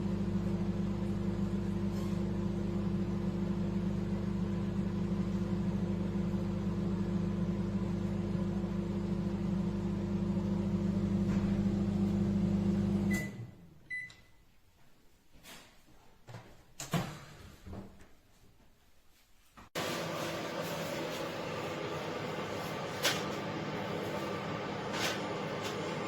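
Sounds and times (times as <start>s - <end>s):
microwave oven humming: 0.0s - 14.4s, 19.8s - 26.0s.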